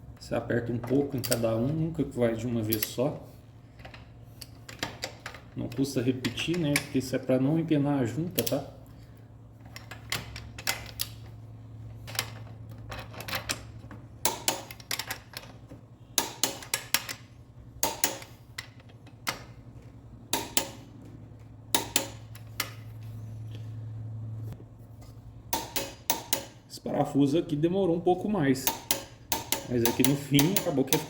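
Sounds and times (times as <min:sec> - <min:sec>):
steady low hum: 0:00.0 - 0:31.0
ratchet torque wrench clicking: 0:28.6 - 0:31.0.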